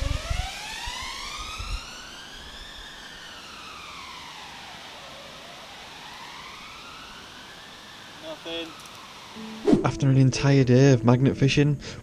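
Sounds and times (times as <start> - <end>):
emergency vehicle siren wailing: 0.0 - 9.7.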